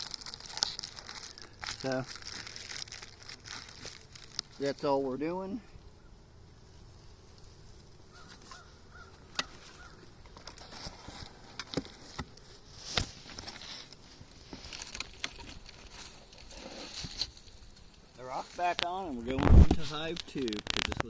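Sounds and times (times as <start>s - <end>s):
faint short bird calls: 8.1s - 10.1s
rock set on wood: 9.4s - 17.7s, 18.3s - 21.0s.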